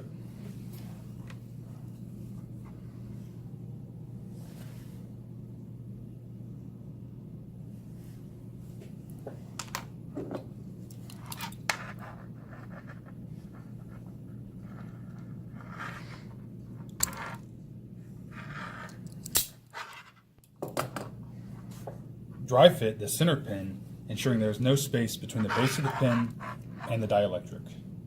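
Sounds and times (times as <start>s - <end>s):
steady low hum: 0.0s - 28.0s
scraping rasps: 25.3s - 27.0s.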